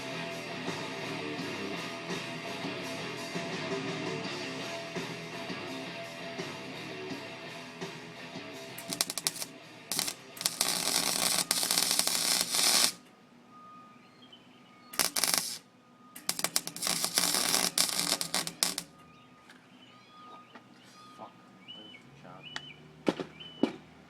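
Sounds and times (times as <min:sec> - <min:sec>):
welding arc crackling: 0:08.8 - 0:13.1, 0:15.0 - 0:15.6, 0:16.2 - 0:18.9.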